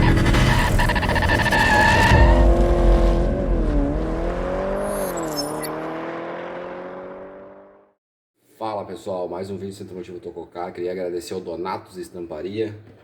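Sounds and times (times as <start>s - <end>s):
car engine running: 0.0s - 7.8s.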